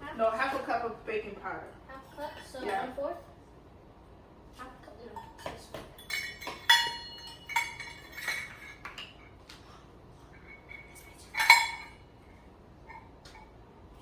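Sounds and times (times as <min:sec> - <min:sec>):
measuring cups and spoons clinking: 0:05.0 - 0:09.4, 0:10.3 - 0:12.1.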